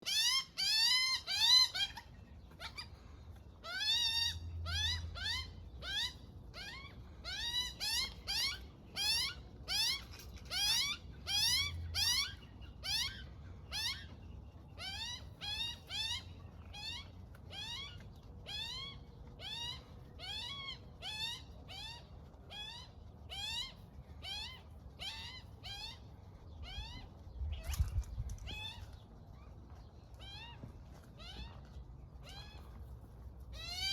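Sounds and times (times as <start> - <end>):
young magpie begging calls: 0.0 - 2.9.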